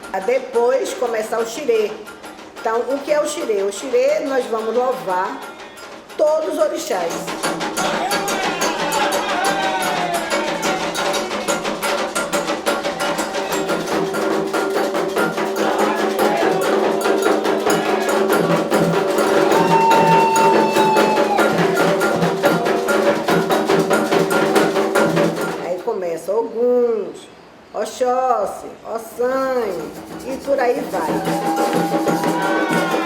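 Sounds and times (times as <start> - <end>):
drums: 0.0 - 25.9, 29.3 - 33.0
rapid wood block strokes: 29.2 - 33.0.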